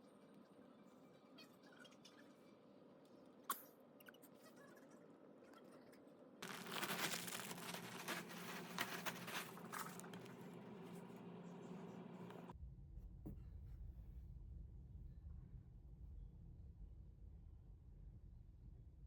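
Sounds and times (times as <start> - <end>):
rustling and crinkling: 6.4 - 12.5.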